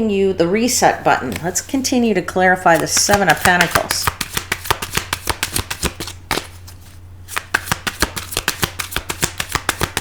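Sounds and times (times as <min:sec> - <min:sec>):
cards being shuffled: 0:01.3 - 0:01.8, 0:02.7 - 0:10.0.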